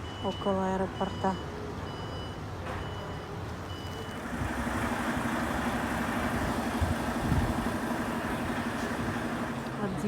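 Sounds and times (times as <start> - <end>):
bus engine humming: 3.5 - 10.0.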